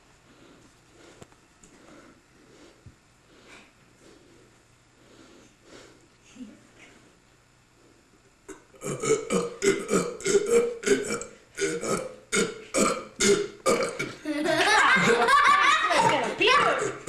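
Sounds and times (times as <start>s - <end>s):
boy belching: 8.7s - 14.3s, 16.3s - 17.0s.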